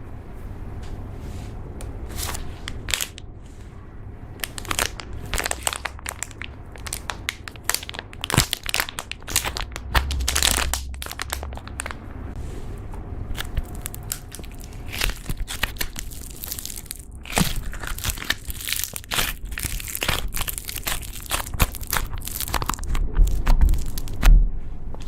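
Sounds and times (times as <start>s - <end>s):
slime crackling and popping: 2.2s - 3.2s, 4.4s - 12.0s, 13.3s - 24.3s.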